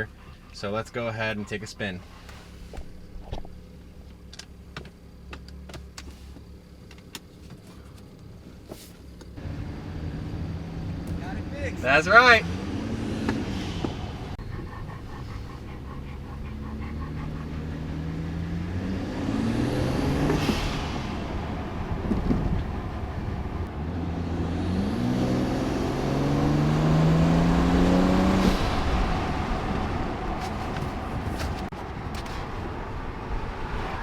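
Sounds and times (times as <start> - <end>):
car engine accelerating hard: 9.4 - 34.0.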